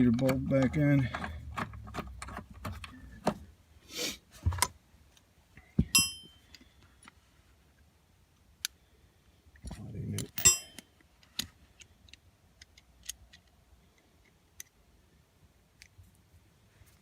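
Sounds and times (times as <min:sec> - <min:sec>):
ringing metal clink: 0:05.9 - 0:06.4, 0:10.3 - 0:10.9
metal tools clicking and clinking: 0:06.0 - 0:06.4, 0:10.2 - 0:10.9.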